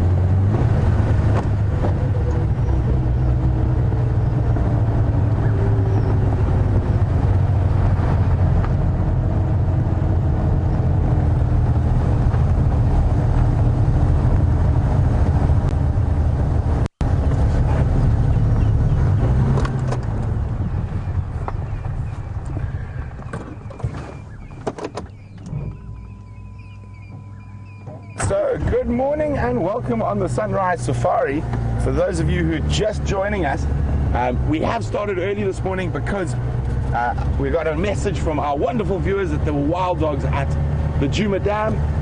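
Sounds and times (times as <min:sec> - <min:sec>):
vehicle engine running: 0:00.0 - 0:42.0
faint whining tones: 0:17.8 - 0:29.2.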